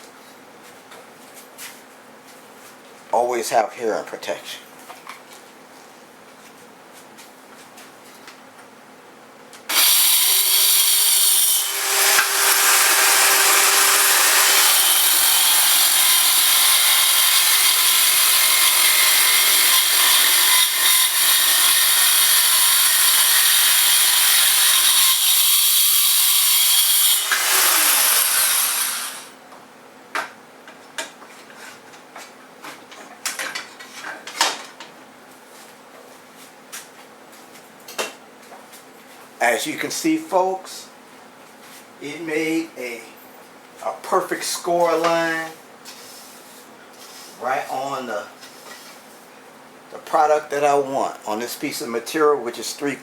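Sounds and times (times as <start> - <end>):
circular saw cutting plywood: 9.7 - 29.3.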